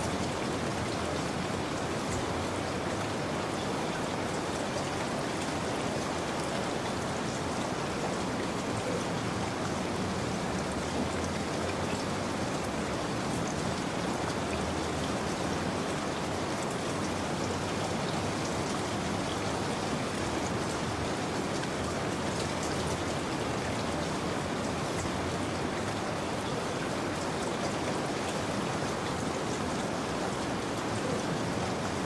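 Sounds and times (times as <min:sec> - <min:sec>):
steady rain falling: 0:00.0 - 0:32.0.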